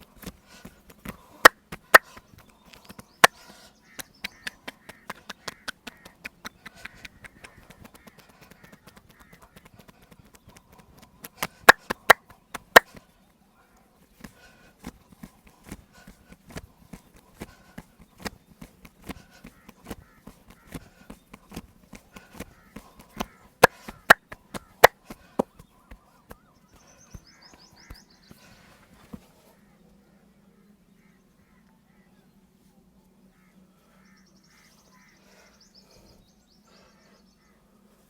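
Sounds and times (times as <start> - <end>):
hands slapping on body: 0.2 - 13.0, 14.2 - 28.3.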